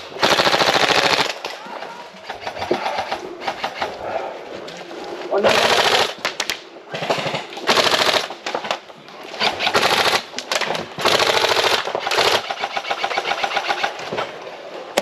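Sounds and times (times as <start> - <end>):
airsoft guns firing bursts: 0.0 - 1.4, 5.5 - 8.8, 9.4 - 10.3, 11.0 - 14.1.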